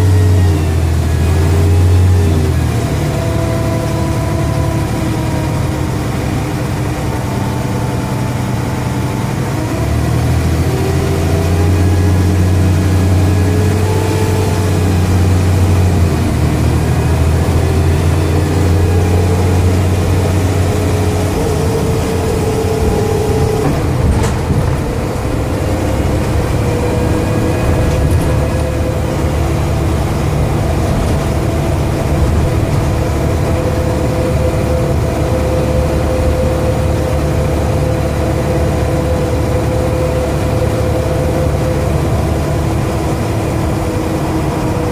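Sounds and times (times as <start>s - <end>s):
bus diesel engine drone: 0.0s - 44.9s
whining tones rising in pitch: 0.0s - 44.9s.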